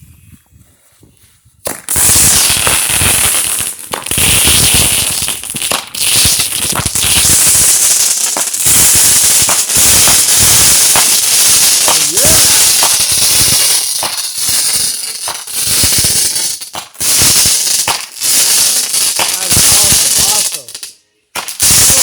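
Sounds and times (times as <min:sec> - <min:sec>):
firework hissing crackle: 0:01.6 - 0:22.0
firework shots: 0:01.6 - 0:22.0.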